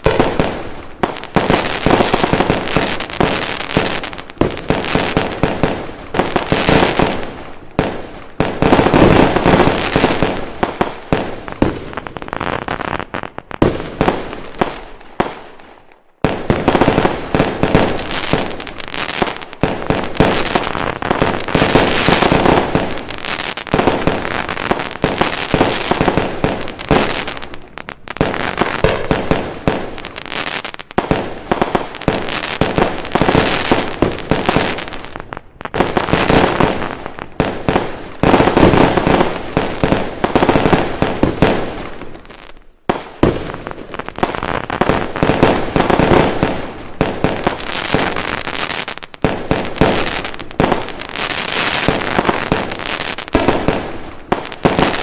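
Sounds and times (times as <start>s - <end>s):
fireworks bangs and crackling: 0.0s - 55.0s.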